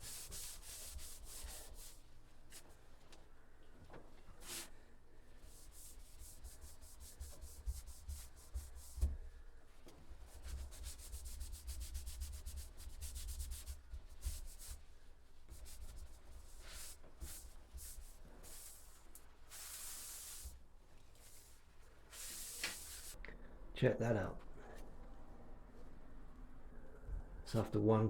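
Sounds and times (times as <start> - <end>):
cloth rubbing on wood: 0.0 - 2.8, 5.5 - 9.2, 9.8 - 23.2.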